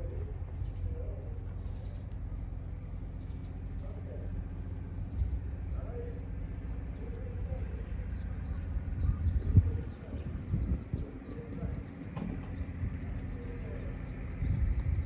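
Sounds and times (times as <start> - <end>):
low rumble: 0.0 - 15.0
faint bird calls: 5.2 - 15.0.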